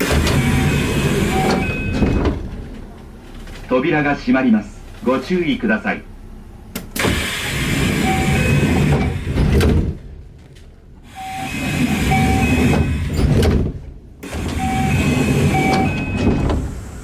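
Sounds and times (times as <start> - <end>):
sliding doors closing with air rush: 0.0 - 4.0, 6.2 - 17.0
door chime beeps: 0.2 - 2.2, 8.0 - 9.2, 11.1 - 13.1, 14.5 - 16.4.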